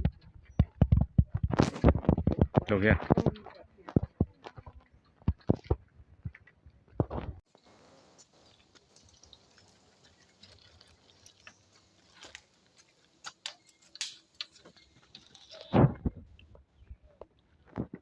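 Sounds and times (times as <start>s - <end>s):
footsteps on forest trail: 7.5s - 15.7s.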